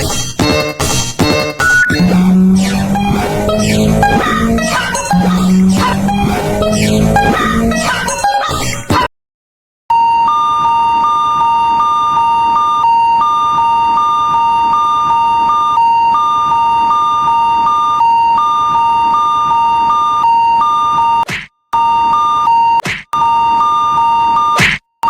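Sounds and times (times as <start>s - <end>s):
railroad crossing alarm beeping: 9.9s - 21.2s, 21.8s - 24.6s.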